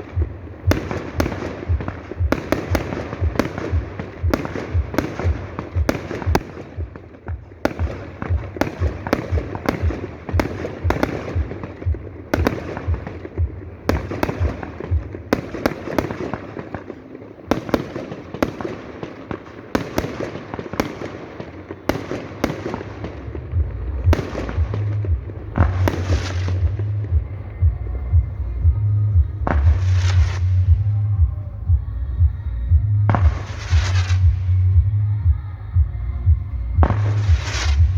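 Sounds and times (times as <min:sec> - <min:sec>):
fireworks crackle: 0:00.0 - 0:27.4, 0:29.5 - 0:30.6, 0:33.1 - 0:34.6, 0:36.9 - 0:37.9
steady low sound: 0:22.6 - 0:37.9.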